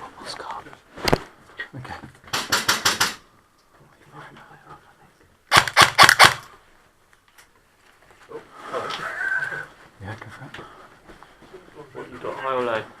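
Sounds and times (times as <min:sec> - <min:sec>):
airsoft rifle firing burst: 0:05.5 - 0:06.4.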